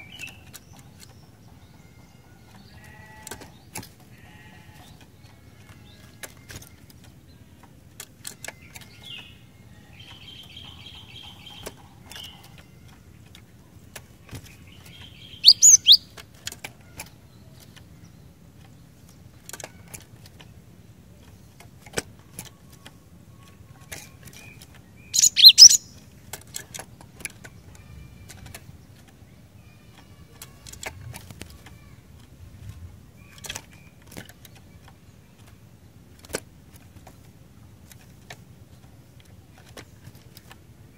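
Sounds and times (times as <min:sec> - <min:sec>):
sharp clicks: 0:14.0 - 0:17.8, 0:23.9 - 0:29.1
bird buzzy trill: 0:15.2 - 0:16.1, 0:25.1 - 0:26.0.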